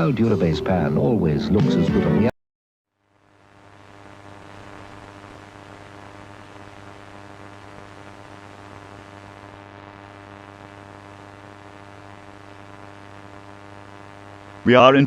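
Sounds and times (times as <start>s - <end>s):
static hiss: 0.0s - 1.4s, 3.0s - 15.0s
electrical hum: 0.0s - 2.3s, 3.1s - 15.0s.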